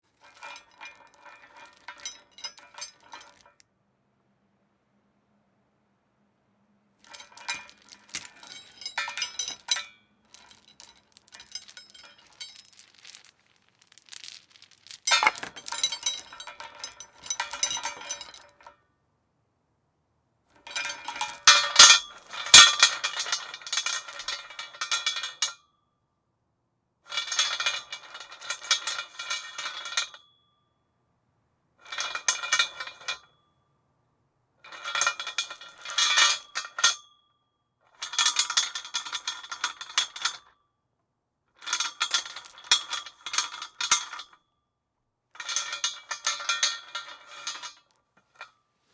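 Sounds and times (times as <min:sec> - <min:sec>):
metal chain rattling against post: 0:07.1 - 0:18.7.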